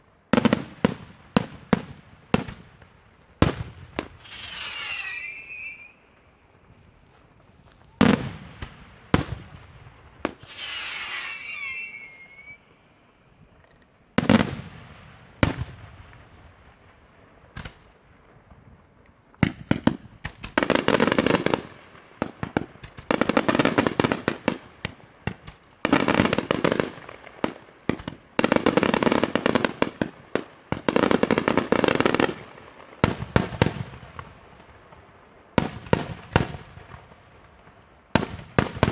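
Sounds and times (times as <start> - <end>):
crackling firework volleys: 0.0 - 13.2, 14.2 - 38.9
firework bangs: 0.4 - 6.3, 7.9 - 12.8, 14.2 - 18.6, 19.4 - 38.9
whistling firework shell: 4.2 - 6.3, 10.4 - 12.9.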